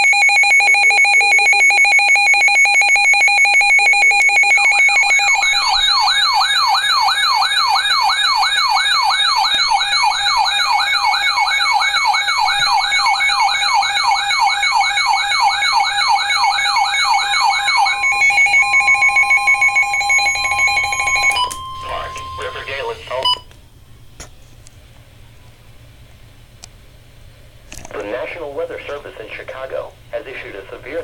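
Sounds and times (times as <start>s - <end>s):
sweeping siren-like alarm: 0.0s - 23.4s
steady alert tones: 0.1s - 23.4s.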